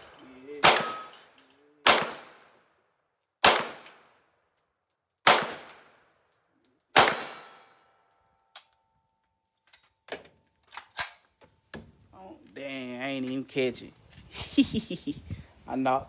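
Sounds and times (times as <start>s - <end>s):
pistol shots: 0.0s - 1.2s, 1.8s - 2.5s, 3.4s - 4.1s, 5.2s - 6.0s, 7.0s - 7.6s.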